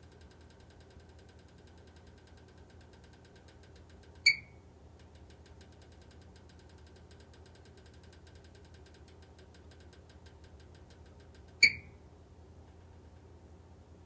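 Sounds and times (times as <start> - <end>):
fast faint ticking: 0.0 - 11.8.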